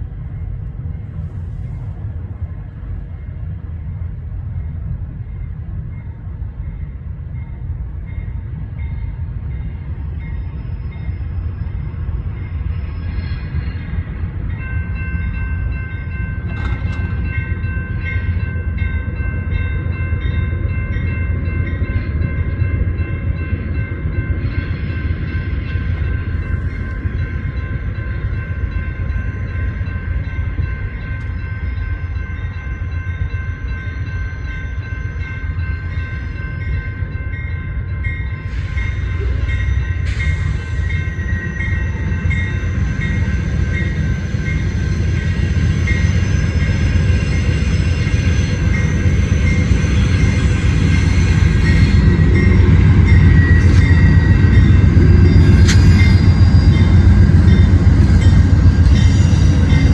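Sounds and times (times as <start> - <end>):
train rumbling past: 0.0 - 59.9
high-pitched whine: 38.3 - 59.9.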